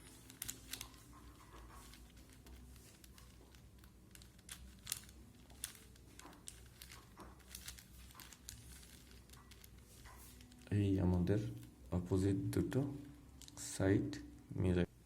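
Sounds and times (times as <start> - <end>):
puzzle cube layers clicking: 0.0 - 11.7.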